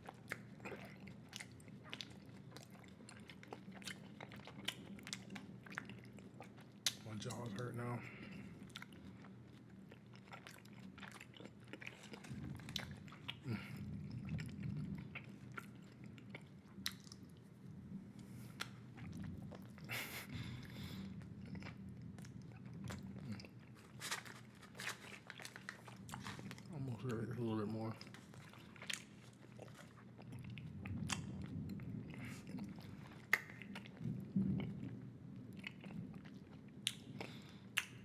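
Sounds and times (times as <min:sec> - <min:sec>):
bubble gum chewing smacks: 0:32.1 - 0:34.8, 0:35.6 - 0:38.0.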